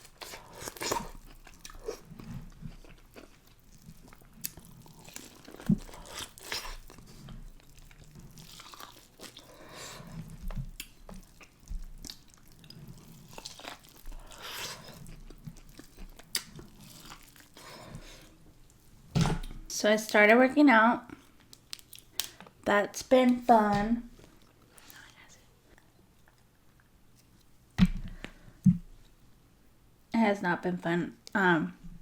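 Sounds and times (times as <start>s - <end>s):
person chewing and biting: 0.0s - 17.8s
wet smacks and clicks: 15.7s - 17.0s, 21.4s - 22.5s.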